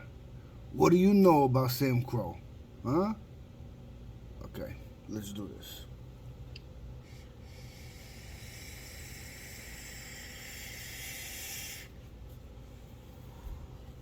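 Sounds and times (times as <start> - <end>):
vape coil sizzling hiss: 7.1 - 11.9.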